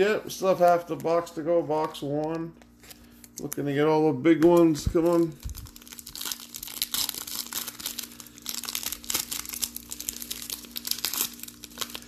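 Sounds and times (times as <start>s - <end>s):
steady low hum: 0.0s - 12.0s
plastic wrapper tearing and crinkling: 4.4s - 12.0s.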